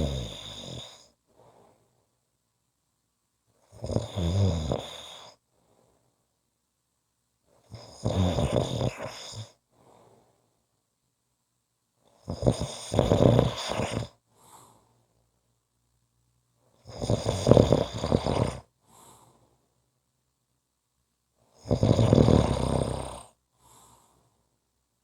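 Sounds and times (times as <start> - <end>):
person snoring: 0.0 - 1.1, 3.7 - 5.4, 7.7 - 9.6, 12.2 - 14.2, 16.8 - 18.7, 21.6 - 24.1
faint breath: 1.0 - 2.2, 5.2 - 6.3, 9.7 - 10.6, 14.3 - 15.3, 18.8 - 19.8, 23.5 - 24.6.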